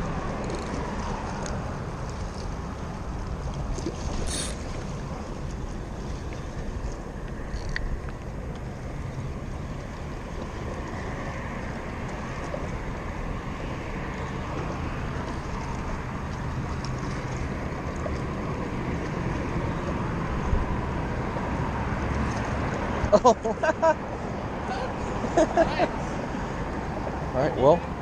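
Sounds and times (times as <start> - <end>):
steady outdoor rumble: 0.0 - 28.0
hiss: 4.3 - 4.6.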